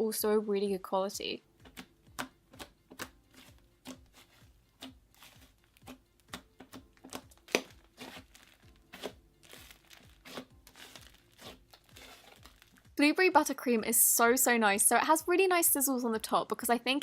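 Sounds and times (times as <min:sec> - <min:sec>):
slime squished by hand: 0:04.8 - 0:12.9.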